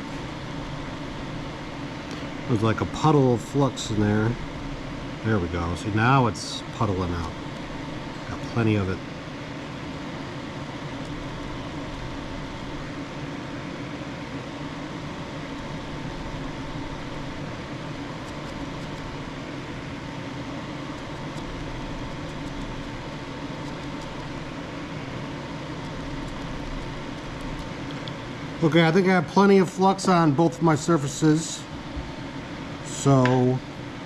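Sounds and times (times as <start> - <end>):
faint high whine: 0.0 - 34.0
fan humming: 0.0 - 34.0.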